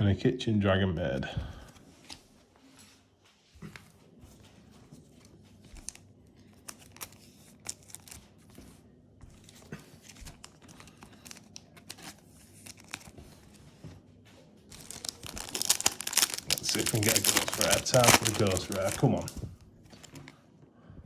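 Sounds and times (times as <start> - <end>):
cards and wrappers rustling: 5.0 - 8.8, 9.4 - 14.0, 14.6 - 20.4.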